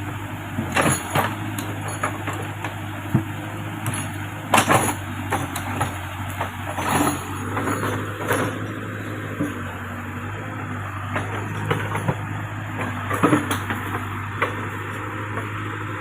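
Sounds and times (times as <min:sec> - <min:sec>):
diesel engine running: 0:00.0 - 0:16.0
metallic knocks and clanks: 0:11.1 - 0:14.6.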